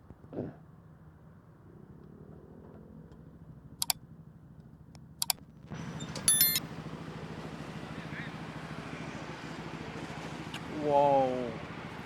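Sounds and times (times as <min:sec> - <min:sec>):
passing vehicle: 0:05.7 - 0:12.0
high ringing tone: 0:06.0 - 0:06.6.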